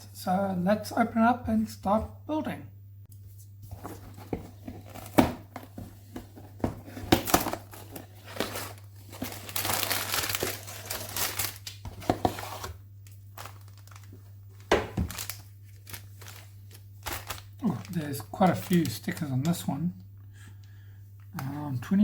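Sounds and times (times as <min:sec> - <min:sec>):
steady low hum: 0:00.0 - 0:22.0
plastic bags crinkling: 0:06.8 - 0:19.6.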